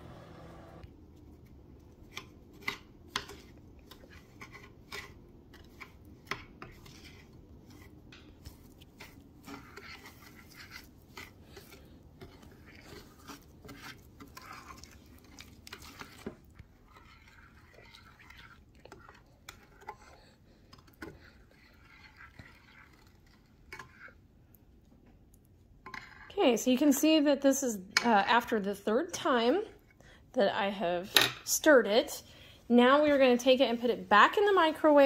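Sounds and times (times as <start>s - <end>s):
spoon scraping a baking dish: 2.2s - 24.2s.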